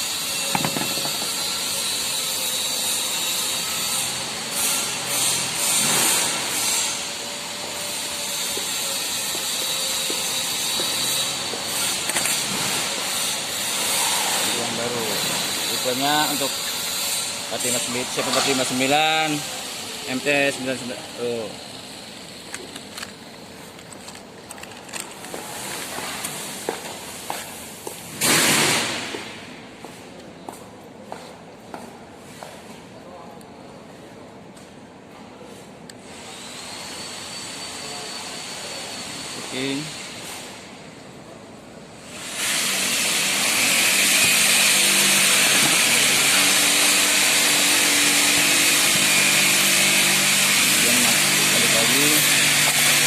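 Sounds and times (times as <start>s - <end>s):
electric power tool whining: 0.1s - 2.8s, 42.2s - 53.0s
sudden loud hiss: 28.2s - 29.2s.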